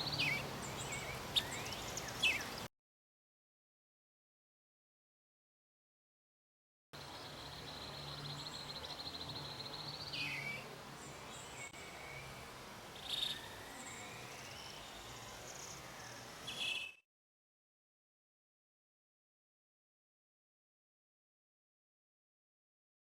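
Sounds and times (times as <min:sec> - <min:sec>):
bird calls and chirps: 0:00.0 - 0:02.7, 0:07.0 - 0:17.0.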